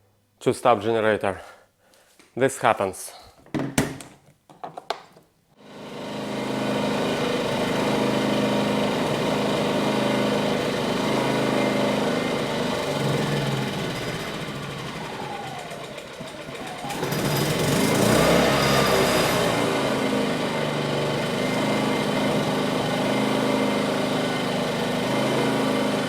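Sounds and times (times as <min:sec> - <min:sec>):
generator engine running: 0:05.6 - 0:26.0.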